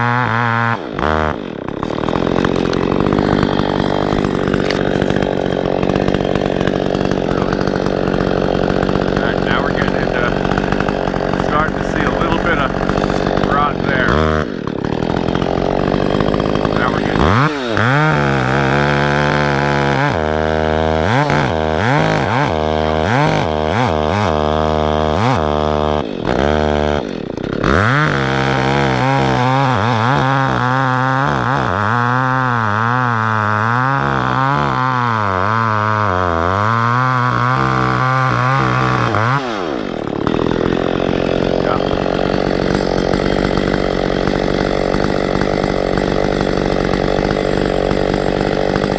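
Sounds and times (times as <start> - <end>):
chainsaw cutting wood: 0.0 - 48.9.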